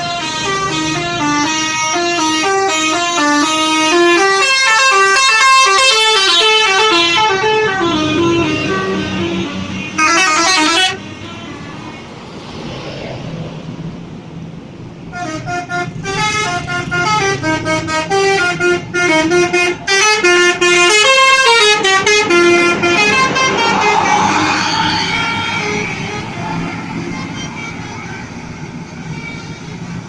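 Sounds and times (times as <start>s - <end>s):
musical air horn: 0.0s - 11.1s, 15.1s - 27.9s
bus engine hum: 0.0s - 30.0s.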